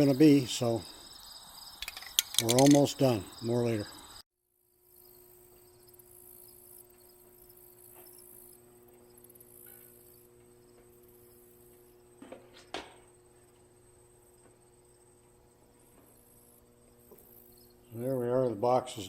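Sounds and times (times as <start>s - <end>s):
room tone hum and hiss: 4.8s - 19.0s.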